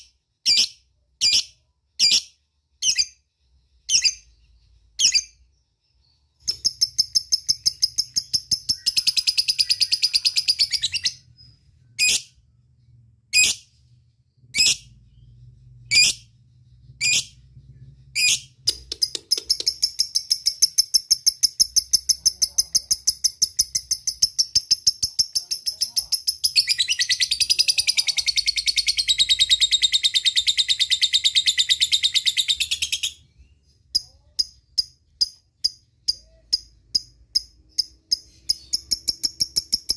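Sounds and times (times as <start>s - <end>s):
lovebird chattering: 6.4s - 11.3s, 18.1s - 33.2s, 33.9s - 39.9s.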